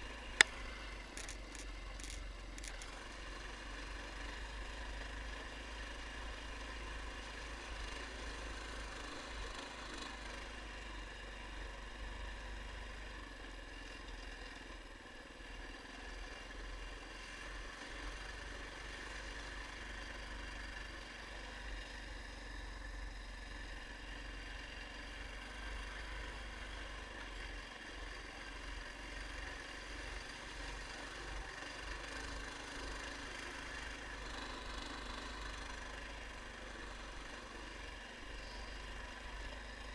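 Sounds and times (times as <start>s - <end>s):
vehicle engine rumbling: 0.0s - 6.6s.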